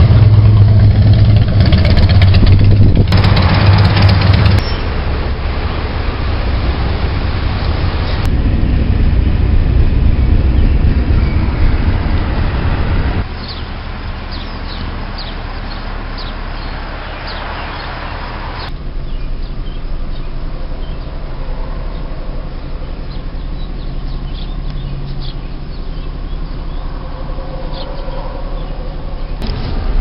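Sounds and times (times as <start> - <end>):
loud low rumble: 0.0 - 30.0
small birds chirping: 13.3 - 27.0.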